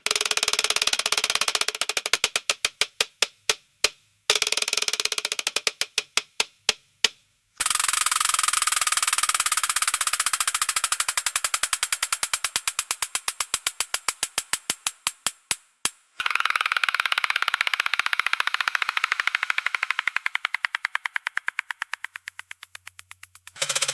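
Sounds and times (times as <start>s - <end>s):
spinning gear wheel ticking: 0.0s - 3.1s, 23.3s - 23.9s.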